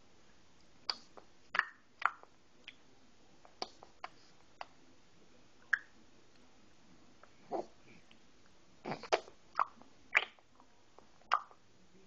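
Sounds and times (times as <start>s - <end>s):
baby making mouth clicks and pops: 8.9s - 10.4s.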